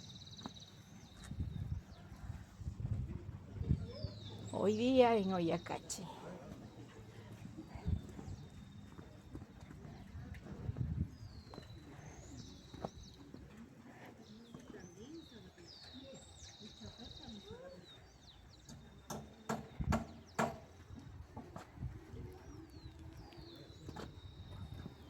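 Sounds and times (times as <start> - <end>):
songbird singing: 0.0 - 25.0
sharp knocks: 19.1 - 20.7.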